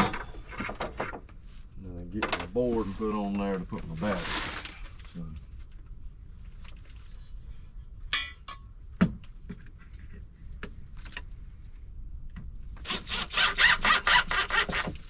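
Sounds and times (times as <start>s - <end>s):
knocks of wood and tools: 8.2s - 9.6s
handsaw cutting wood: 12.8s - 15.0s.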